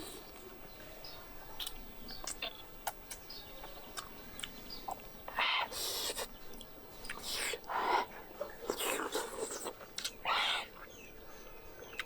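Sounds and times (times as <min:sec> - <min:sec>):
mouth clicks and smacks: 0:01.6 - 0:05.1, 0:05.7 - 0:07.8, 0:08.6 - 0:11.0.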